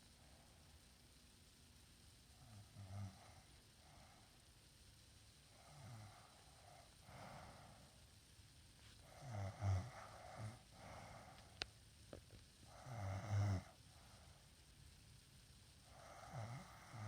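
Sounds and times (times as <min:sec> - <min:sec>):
soft breathing: 0:02.4 - 0:04.6, 0:05.4 - 0:08.2, 0:08.8 - 0:14.7
woman snoring: 0:02.5 - 0:03.4, 0:09.1 - 0:11.4, 0:12.7 - 0:13.8, 0:15.9 - 0:17.0.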